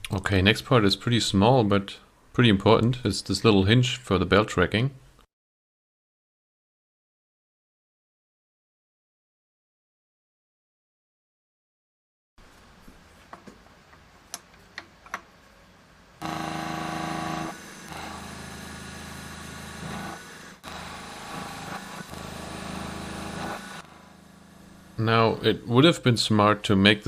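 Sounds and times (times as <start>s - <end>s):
machine tool cutting metal: 16.2s - 25.0s.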